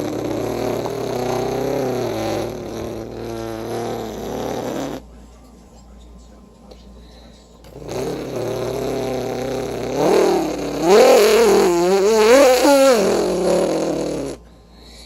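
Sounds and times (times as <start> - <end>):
person imitating car engine: 0.0 - 5.0, 7.8 - 14.4.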